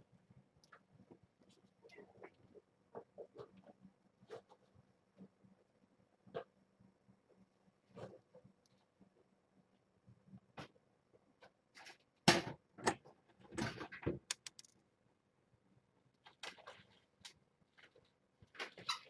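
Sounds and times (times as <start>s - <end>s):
knocks and clatters of handling: 11.4s - 14.8s.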